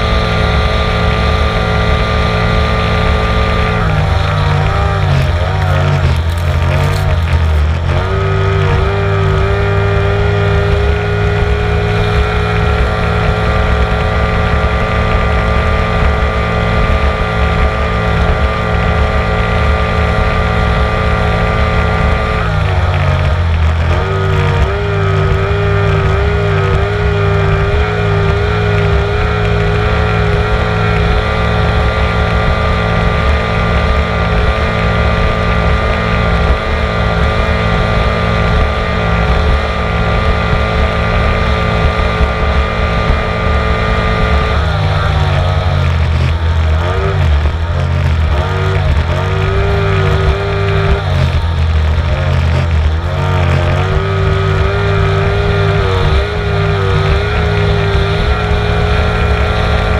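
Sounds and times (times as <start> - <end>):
powerboat engine at high revs: 0.0 - 59.9
wind: 0.0 - 59.9.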